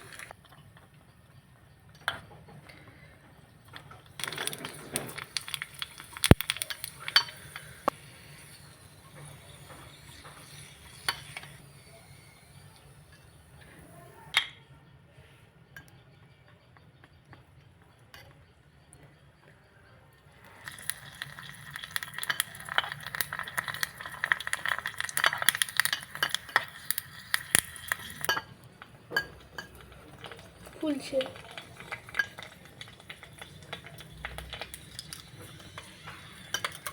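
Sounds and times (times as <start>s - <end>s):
spoon clinking against a bowl: 5.4s - 11.6s, 20.5s - 36.9s.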